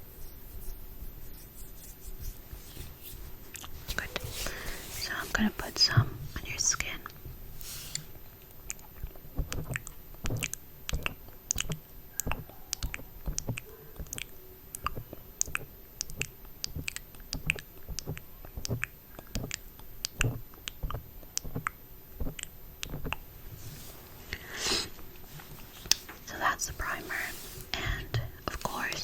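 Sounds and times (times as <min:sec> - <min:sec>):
wet mouth clicks and smacks: 0:07.9 - 0:23.2.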